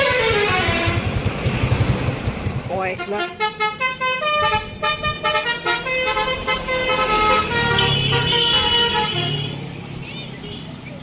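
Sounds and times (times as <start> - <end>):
musical bus horn tune: 0.0 - 1.2, 3.0 - 9.7
bus engine rumble: 0.0 - 11.0.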